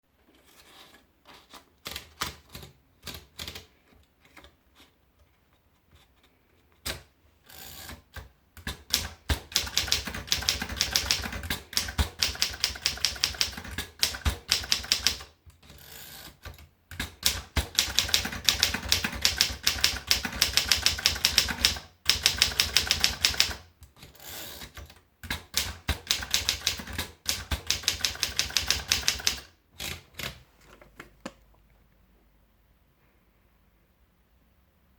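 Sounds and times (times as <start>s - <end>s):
typewriter key strikes: 17.0s - 23.6s, 25.3s - 30.0s.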